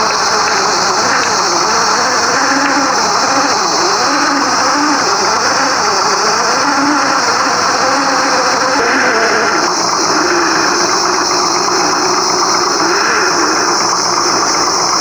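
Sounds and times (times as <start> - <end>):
simulated engine sound: 0.0 - 15.0
high-pitched hiss: 8.3 - 15.0.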